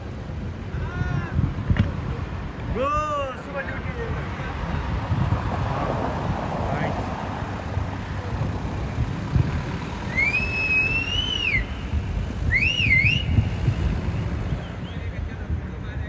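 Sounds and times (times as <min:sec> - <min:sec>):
wind rumble on microphone: 0:00.0 - 0:16.0
person whistling: 0:10.1 - 0:13.5.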